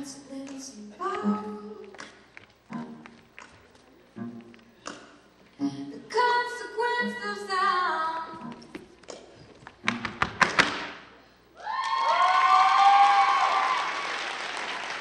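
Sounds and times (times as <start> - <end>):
tap shoes striking stage floor: 8.5 - 11.0
applause and cheering: 11.6 - 15.0.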